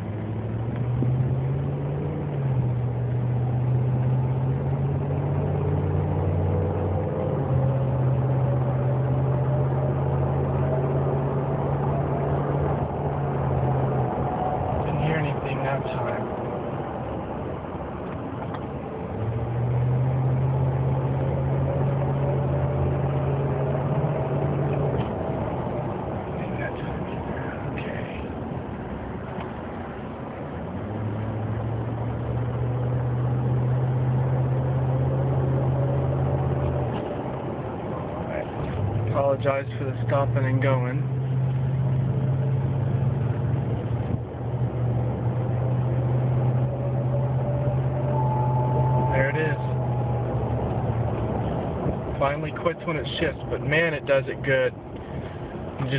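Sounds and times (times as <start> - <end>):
truck engine hum from inside cab: 0.0 - 55.9
faint thin whine: 46.9 - 52.9.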